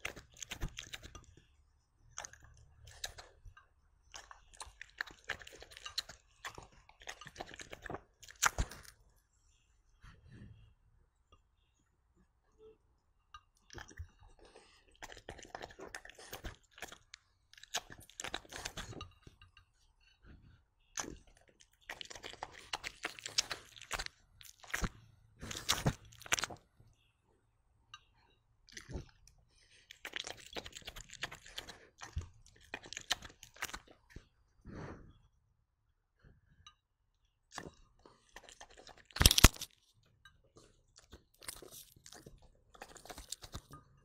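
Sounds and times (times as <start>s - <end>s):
dog chewing and crunching: 0.0s - 1.4s, 2.1s - 3.4s, 4.1s - 9.0s, 13.7s - 19.4s, 20.9s - 26.6s, 28.7s - 29.2s, 29.8s - 34.2s, 37.5s - 39.8s, 40.9s - 43.8s.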